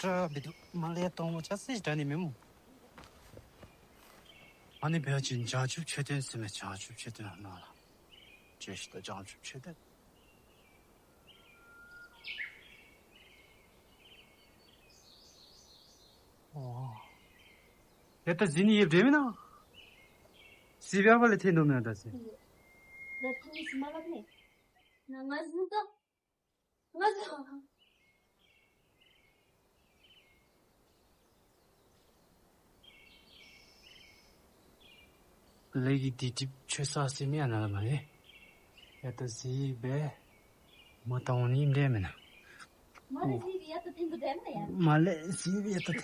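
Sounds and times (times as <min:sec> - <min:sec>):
small birds chirping and trilling: 0:00.0 - 0:25.7, 0:27.0 - 0:46.0
background hiss: 0:00.0 - 0:46.0
thin held whistle: 0:22.6 - 0:23.6.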